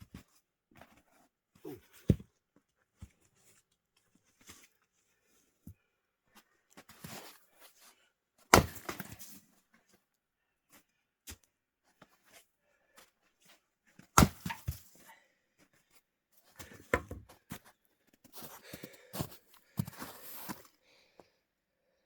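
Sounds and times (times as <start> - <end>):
axe chopping firewood: 8.5 - 9.2, 14.2 - 14.9.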